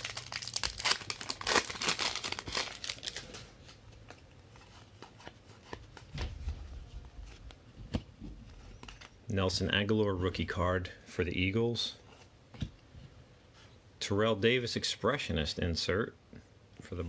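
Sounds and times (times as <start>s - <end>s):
plastic wrappers crinkling: 0.0s - 5.2s.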